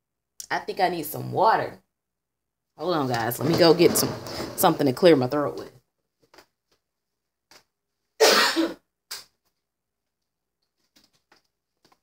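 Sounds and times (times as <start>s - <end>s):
person coughing: 8.2s - 8.9s.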